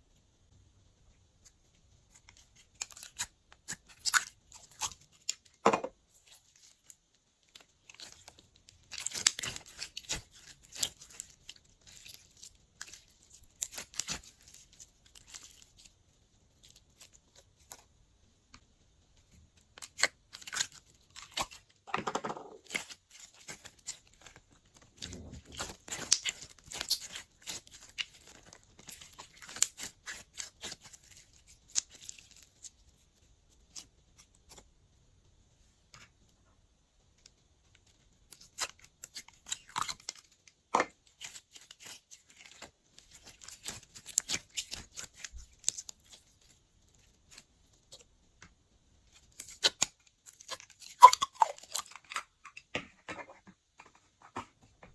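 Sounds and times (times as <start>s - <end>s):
slime squelches: 22.6s - 34.6s.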